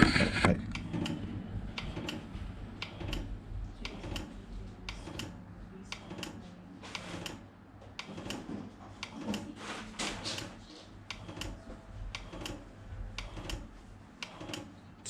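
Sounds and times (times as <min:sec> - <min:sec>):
low steady hum: 0:00.0 - 0:06.8
pressure switches clicking: 0:02.8 - 0:04.3.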